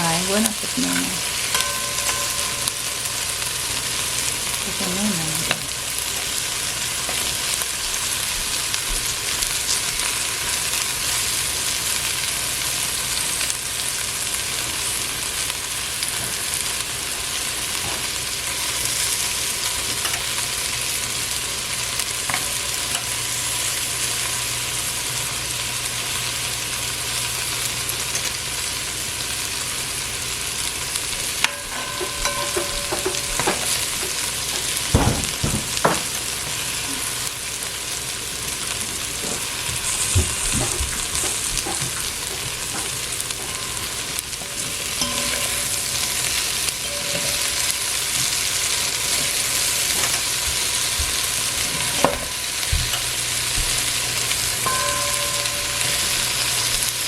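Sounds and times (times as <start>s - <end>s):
okra sizzling in oil: 0.0s - 57.0s
utensil knocking and scraping pot: 0.9s - 4.1s, 31.4s - 36.1s, 39.2s - 53.1s.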